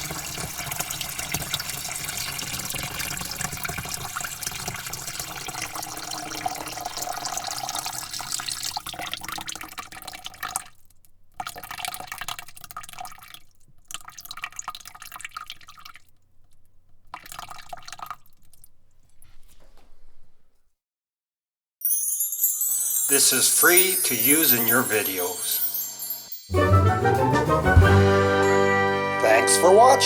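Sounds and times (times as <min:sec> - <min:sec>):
water pouring into a bucket: 0:00.0 - 0:19.3
water trickling and dripping: 0:00.0 - 0:20.4.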